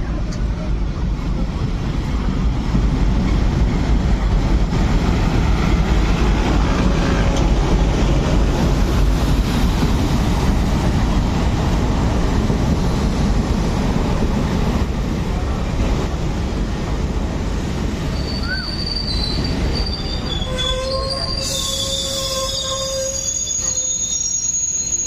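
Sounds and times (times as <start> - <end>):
train rumbling on track: 0.0 - 25.0
wheel and brake squeals: 18.1 - 25.0.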